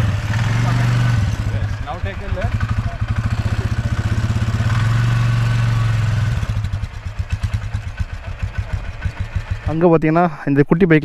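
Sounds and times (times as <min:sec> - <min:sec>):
quad bike engine: 0:00.0 - 0:10.0.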